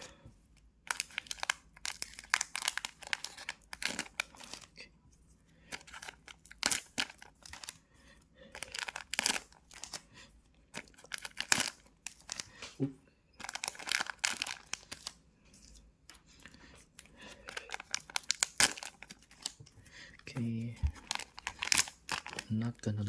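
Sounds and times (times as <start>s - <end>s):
card wrappers tearing and crinkling: 0.9s - 4.8s, 5.7s - 7.8s, 8.6s - 10.0s, 10.8s - 12.6s, 13.4s - 15.2s, 17.3s - 19.7s, 20.3s - 22.8s.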